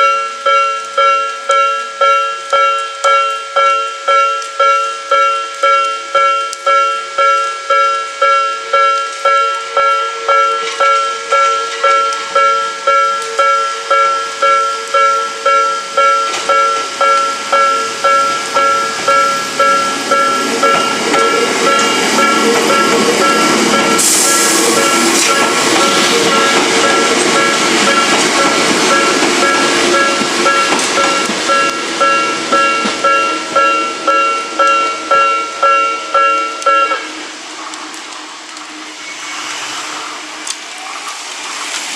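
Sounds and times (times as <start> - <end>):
level crossing alarm ringing: 0.0 - 37.3
train rolling past: 0.0 - 41.9
burst of hiss: 23.9 - 27.0.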